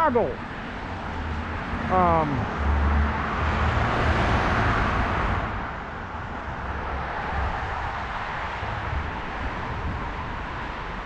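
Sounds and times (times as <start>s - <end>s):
road and traffic hiss: 0.0s - 11.0s
wind rumbling on microphone: 4.6s - 11.0s.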